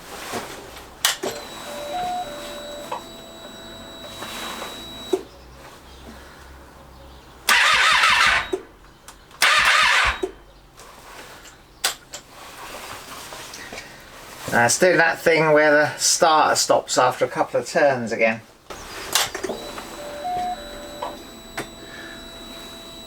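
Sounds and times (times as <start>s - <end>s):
fuel pump humming: 1.1s - 5.3s, 18.7s - 23.0s
starter motor cranking: 1.1s - 5.3s, 7.5s - 8.6s, 9.4s - 10.3s, 18.7s - 23.0s
ignition click: 18.7s - 23.0s.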